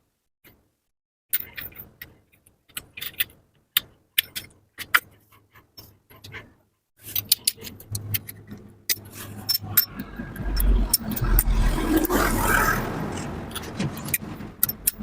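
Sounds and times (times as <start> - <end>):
metal tools clinking: 9.1 - 11.5
low hum: 9.2 - 14.5.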